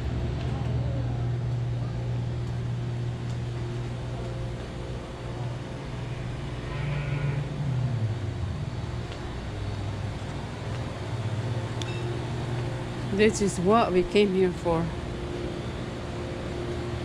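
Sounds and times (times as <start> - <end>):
car engine and road noise: 3.8 - 13.2.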